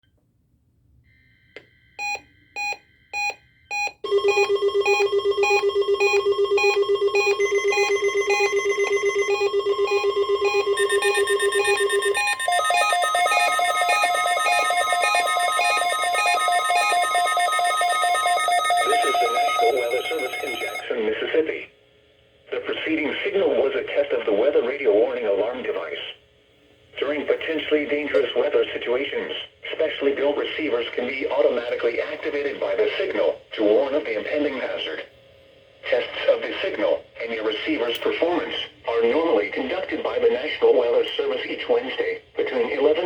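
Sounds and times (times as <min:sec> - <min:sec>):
steady warning alarm tone: 0:01.8 - 0:20.9
alert receiver beeps: 0:02.0 - 0:20.9.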